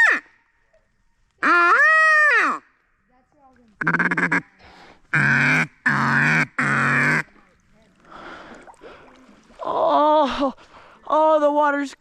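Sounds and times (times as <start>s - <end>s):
honking duck-like quacks: 3.8s - 7.3s.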